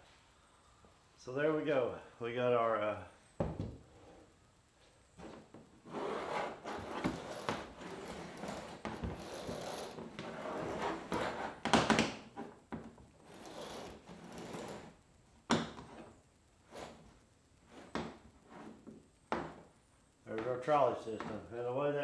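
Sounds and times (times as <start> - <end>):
hands rustling and scraping gear: 5.1 - 11.6.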